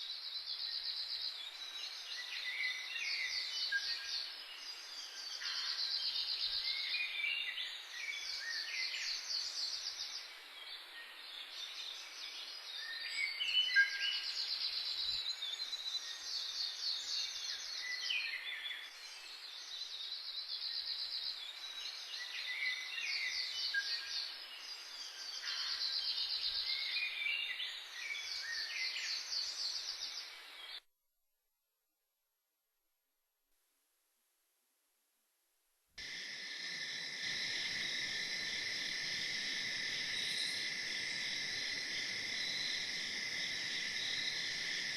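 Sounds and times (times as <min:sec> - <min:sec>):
background hiss: 0:00.0 - 0:30.8, 0:33.5 - 0:44.9
songbirds trilling: 0:36.0 - 0:44.9.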